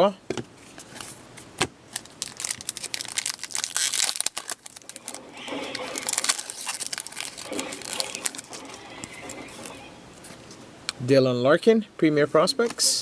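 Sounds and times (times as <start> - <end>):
trading cards rustling and clicking: 1.9 - 10.6.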